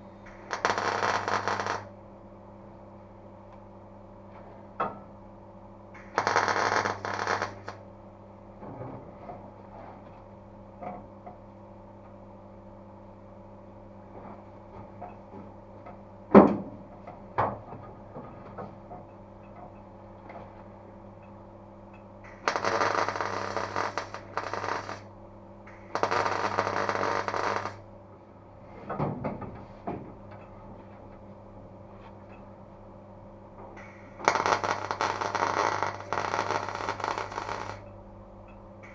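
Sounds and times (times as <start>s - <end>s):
mains hum: 0.0s - 38.9s
welder crackling: 0.3s - 1.9s, 6.0s - 7.8s, 22.3s - 25.1s, 25.7s - 27.8s, 33.8s - 37.8s.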